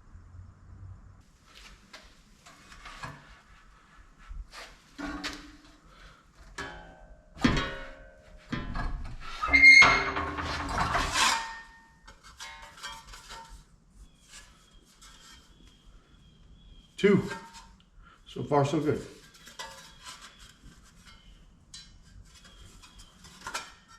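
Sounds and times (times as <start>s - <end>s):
light metal clatter: 5.0s - 13.6s, 18.9s - 23.9s
metal rubbing and squealing: 8.6s - 15.9s.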